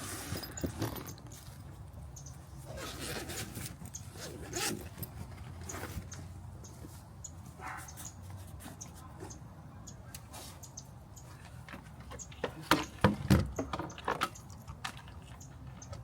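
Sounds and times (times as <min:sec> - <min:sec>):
handling clicks and knocks: 0:00.1 - 0:01.9, 0:11.3 - 0:16.0.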